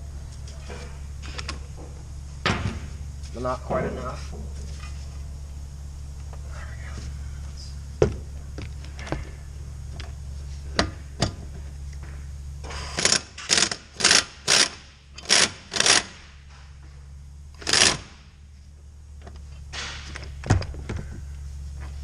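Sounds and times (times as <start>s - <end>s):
ratchet wrench clicking: 12.9s - 16.2s, 17.6s - 18.1s.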